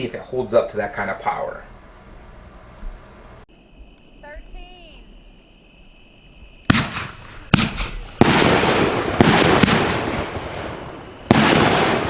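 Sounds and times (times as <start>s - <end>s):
firework crackle: 6.7s - 12.0s
firework launch bangs: 6.7s - 12.0s.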